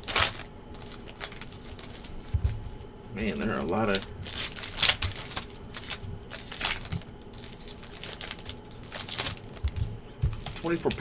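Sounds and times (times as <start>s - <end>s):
foil and plastic wrapping crinkling: 0.0s - 11.0s.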